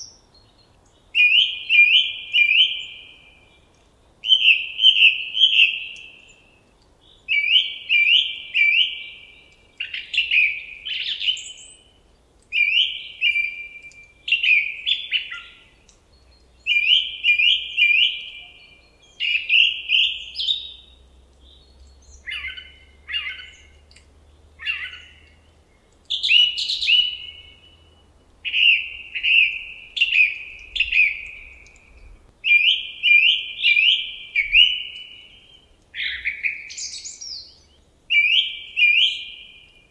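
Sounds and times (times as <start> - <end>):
songbird chirping: 0.0 - 39.9.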